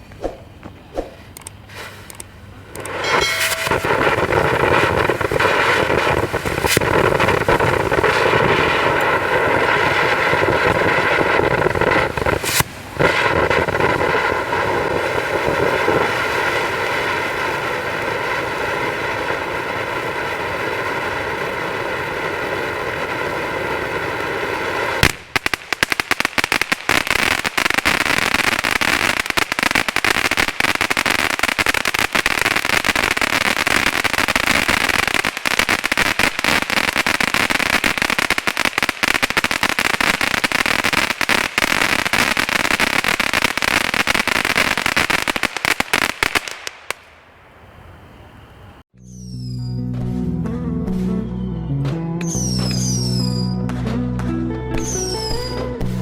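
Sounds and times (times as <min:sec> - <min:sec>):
firework crackling pops: 0:00.0 - 0:47.7, 0:52.2 - 0:53.9, 0:54.8 - 0:56.0
firework hissing spray with whine: 0:02.8 - 0:25.2, 0:26.0 - 0:47.1.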